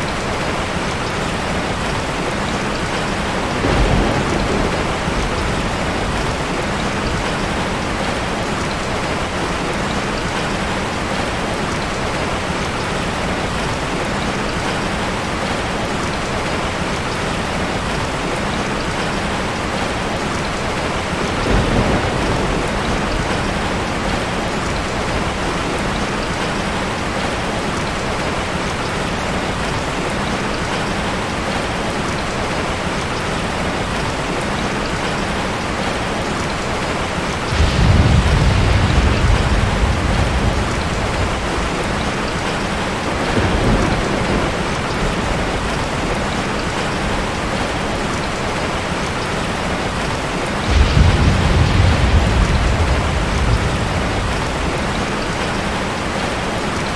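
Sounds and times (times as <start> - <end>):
low thunder rumble: 0.0 - 11.2, 21.0 - 26.5, 37.0 - 47.9, 48.6 - 56.4
heavy rain falling: 0.0 - 56.9.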